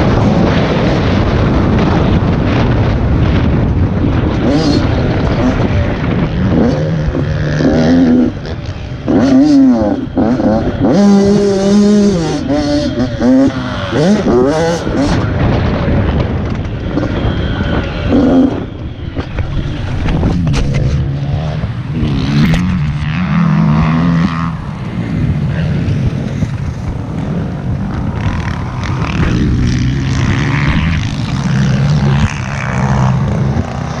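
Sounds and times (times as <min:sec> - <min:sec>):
pit bike engine revving: 0:00.0 - 0:34.0.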